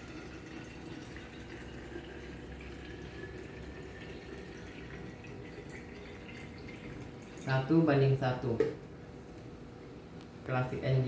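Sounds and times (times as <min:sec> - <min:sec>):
faint trickling liquid: 0:00.0 - 0:08.2.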